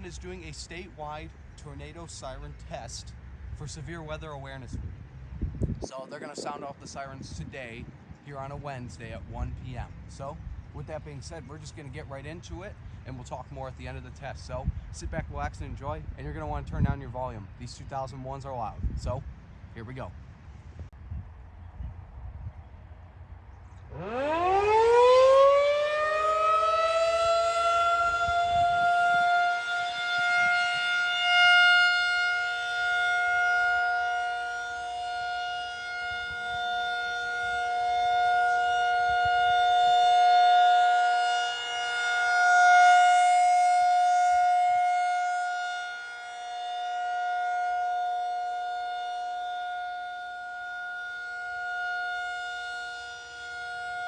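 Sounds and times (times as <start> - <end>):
tornado siren wailing: 23.9 - 54.0.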